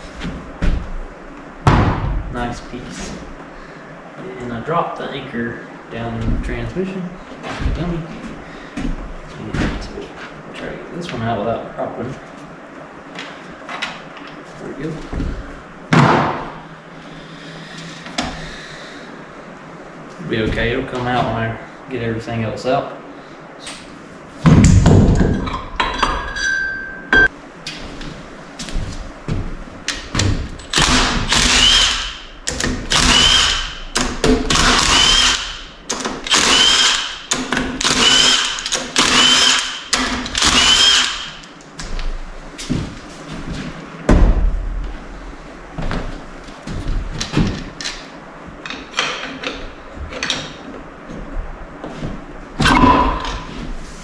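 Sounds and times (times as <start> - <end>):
power tool bursts: 30.7 - 32.2, 32.9 - 33.8, 34.5 - 35.6, 36.3 - 41.4.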